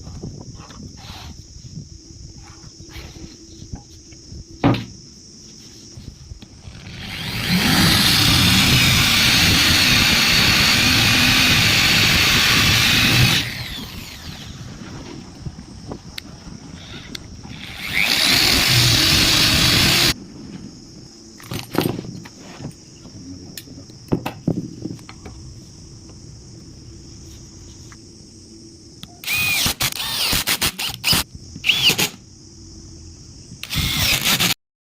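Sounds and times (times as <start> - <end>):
power tool cutting wood: 6.7 - 14.6, 17.5 - 20.2, 29.3 - 32.1, 33.6 - 34.6.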